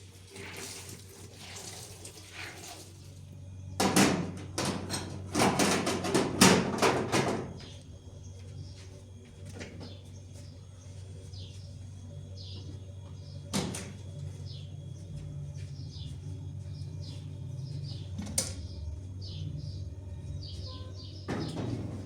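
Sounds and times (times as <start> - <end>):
steady low hum: 2.9 - 22.0
small birds chirping: 9.8 - 21.9.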